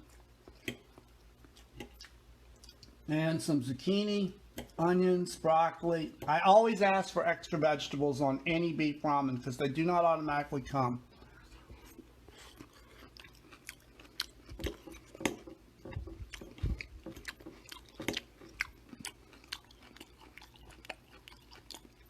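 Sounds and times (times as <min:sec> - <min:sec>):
person chewing food: 0:00.0 - 0:03.0, 0:11.1 - 0:22.0.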